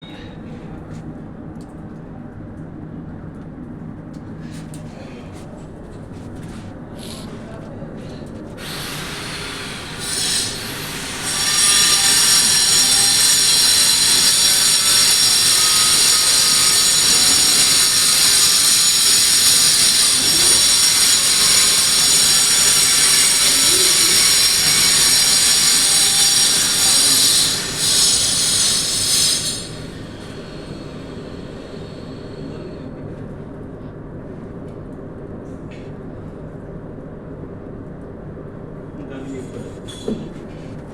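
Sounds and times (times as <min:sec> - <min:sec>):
high-pitched screech: 0:08.6 - 0:29.8.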